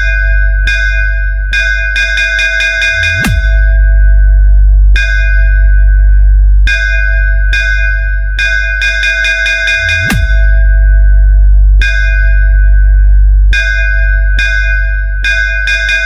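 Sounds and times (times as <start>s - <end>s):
deep sustained bass: 0.0s - 16.0s
downward bass sweep: 2.9s - 8.5s, 9.8s - 15.4s.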